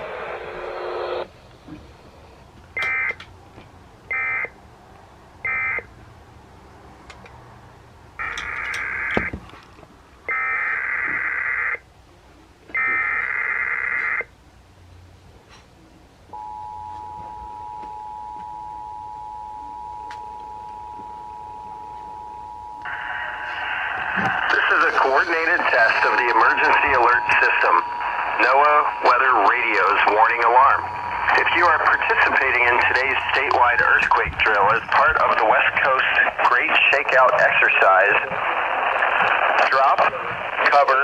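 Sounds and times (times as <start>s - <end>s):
steady two-tone attention signal: 16.3s - 23.6s, 24.5s - 33.4s
buzzy data tone bursts: 20.9s - 34.9s.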